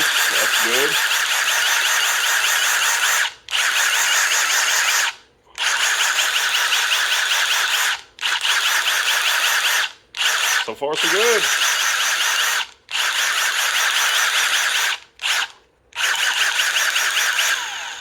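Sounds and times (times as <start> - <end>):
impact driver running free: 0.0 - 3.7, 10.2 - 18.0.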